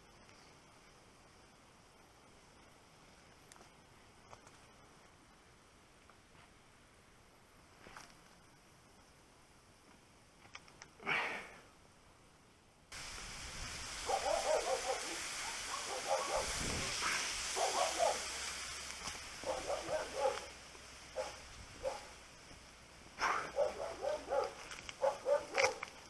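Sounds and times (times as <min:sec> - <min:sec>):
steady hiss: 0:00.0 - 0:26.0
dog barking: 0:14.0 - 0:16.6, 0:17.6 - 0:18.3, 0:19.4 - 0:20.6, 0:21.2 - 0:22.2, 0:23.2 - 0:25.9.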